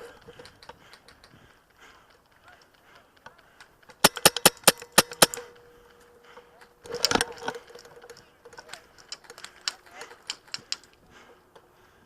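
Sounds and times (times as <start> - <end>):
airsoft guns firing: 3.9 - 5.6.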